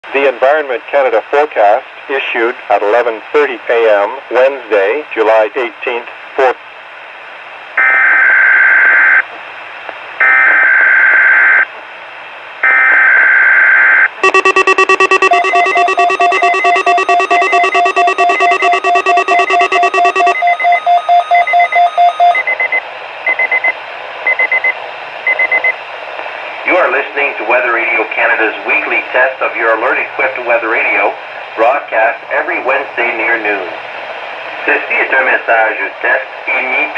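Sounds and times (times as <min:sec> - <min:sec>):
screeching digital data bursts: 0:14.2 - 0:22.4
rapid alarm beeping: 0:14.2 - 0:22.7.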